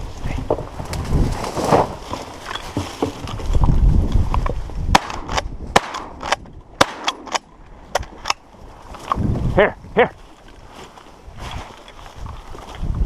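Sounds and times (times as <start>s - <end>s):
short sharp cracks: 5.0s - 7.4s.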